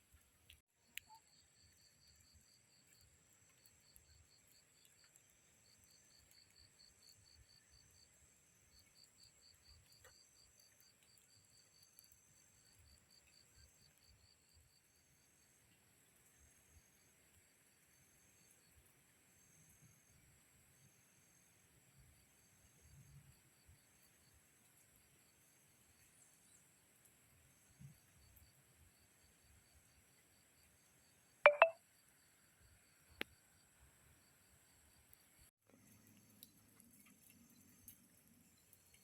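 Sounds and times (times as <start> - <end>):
single click: 31.5 - 31.8.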